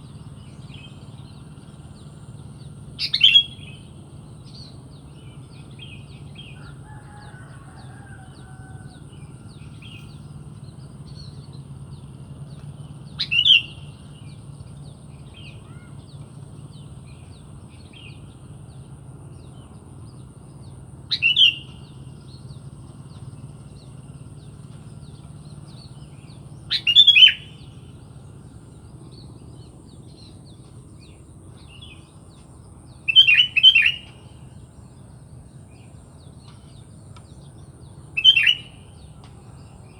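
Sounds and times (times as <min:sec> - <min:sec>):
faint bird chirps: 0:00.0 - 0:14.5, 0:21.1 - 0:39.9
steady low hum: 0:00.0 - 0:39.9
bird calling loudly: 0:03.0 - 0:03.6, 0:13.2 - 0:14.0, 0:21.1 - 0:21.8, 0:26.6 - 0:27.8, 0:33.1 - 0:34.4, 0:38.1 - 0:38.9.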